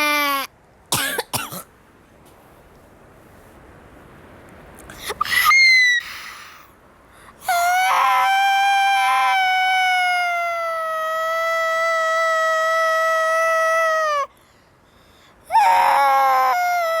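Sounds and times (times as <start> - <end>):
person squealing: 5.1 - 6.3
person shrieking: 5.2 - 6.4, 7.4 - 14.3, 15.5 - 17.0.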